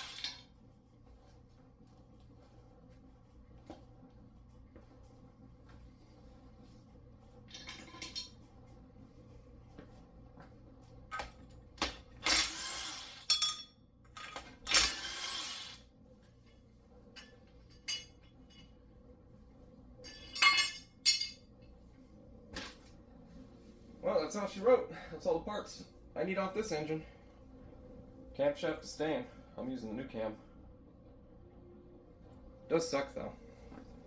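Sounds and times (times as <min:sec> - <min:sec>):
metal tools clinking: 0:07.5 - 0:08.4, 0:13.2 - 0:14.9, 0:17.2 - 0:18.7, 0:20.0 - 0:21.5
metal parts rattling: 0:20.1 - 0:21.4.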